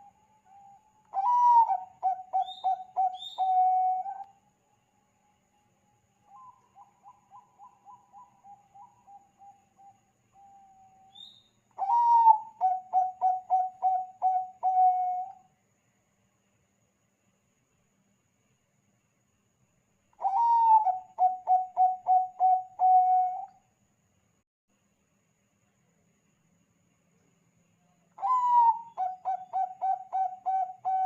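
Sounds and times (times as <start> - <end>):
dove cooing: 0.5 - 4.2, 11.8 - 15.4, 20.2 - 23.5, 28.2 - 31.0.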